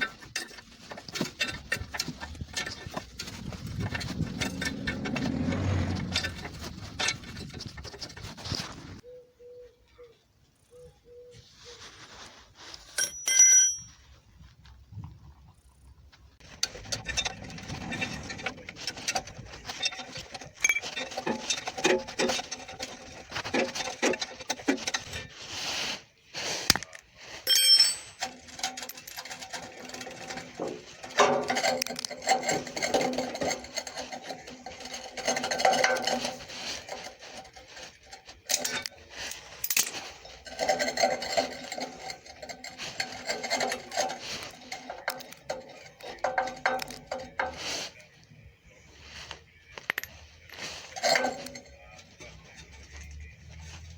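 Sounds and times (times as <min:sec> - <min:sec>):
metal part clinking: 0:13.0 - 0:14.0, 0:26.7 - 0:47.6, 0:49.7 - 0:52.7
hand tool rasping on metal: 0:16.5 - 0:25.8, 0:27.5 - 0:48.0, 0:50.4 - 0:53.6.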